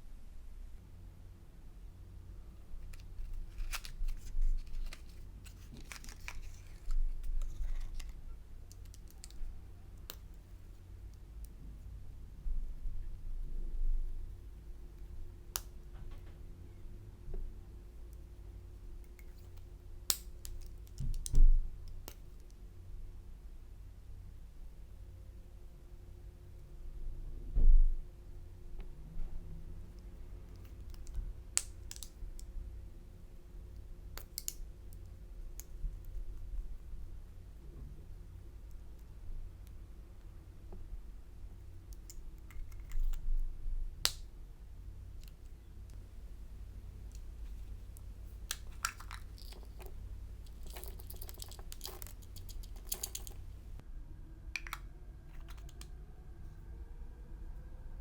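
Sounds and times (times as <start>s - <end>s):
low steady hum: 0.0s - 58.0s.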